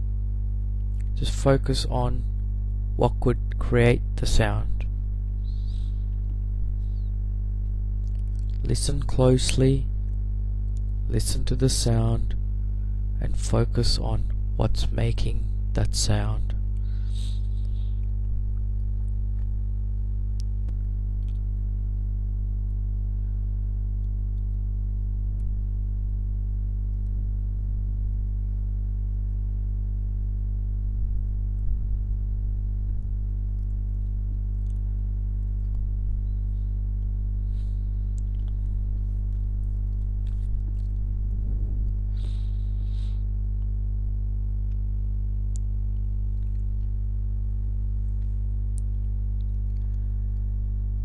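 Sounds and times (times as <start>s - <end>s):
steady low hum: 0.0s - 51.0s
faint clicks: 33.0s - 43.8s, 48.0s - 50.8s.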